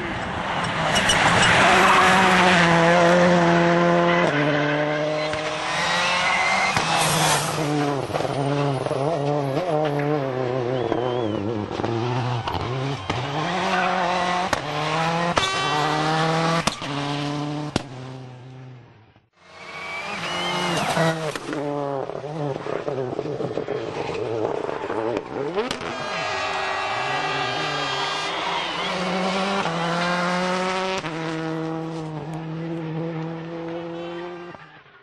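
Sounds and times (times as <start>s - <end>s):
rally car engine revving: 0.1s - 18.9s, 19.5s - 35.0s
tyre squeal: 5.1s - 7.7s.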